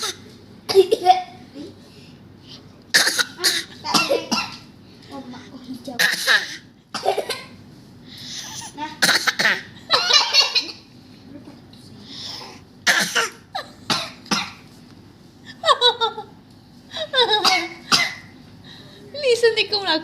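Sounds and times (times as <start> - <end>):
person coughing: 2.9 - 4.7, 6.0 - 7.6, 8.6 - 10.8, 12.8 - 14.6, 17.2 - 18.3.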